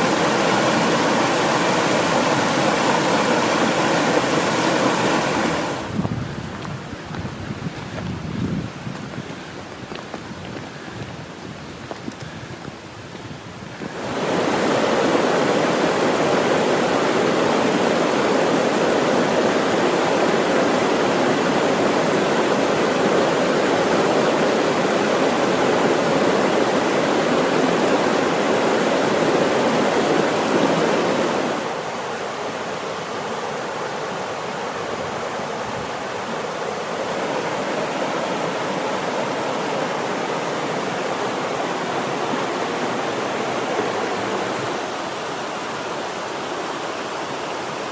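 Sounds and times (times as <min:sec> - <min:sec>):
stream rushing over rocks: 0:00.0 - 0:47.9.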